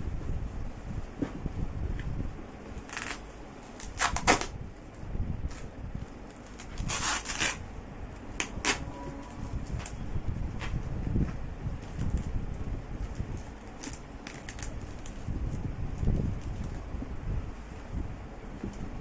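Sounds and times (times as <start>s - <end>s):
low steady rumble: 0.0s - 19.0s
packaging rustling and crinkling: 2.7s - 7.6s, 11.8s - 16.9s.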